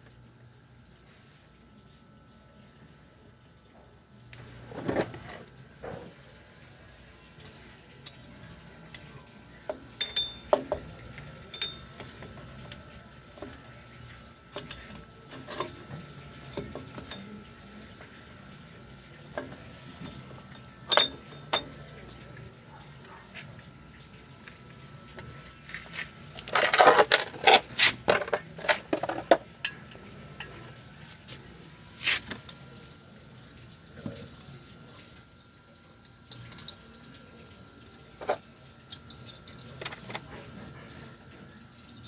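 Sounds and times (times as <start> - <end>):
metal tools clinking and knocking: 9.9 - 12.3, 16.5 - 17.4, 20.5 - 21.8, 25.9 - 30.6.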